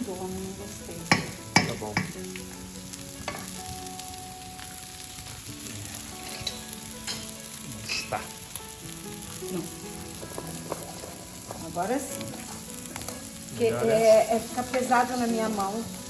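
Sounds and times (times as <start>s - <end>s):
rice sizzling in a pan: 0.0s - 16.0s
spoon scraping a pan: 6.2s - 8.2s, 10.2s - 13.3s.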